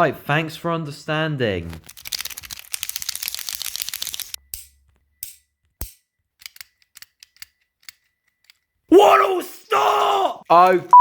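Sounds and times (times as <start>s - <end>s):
fidget toys clicking and rattling: 1.8s - 4.7s, 5.3s - 8.8s.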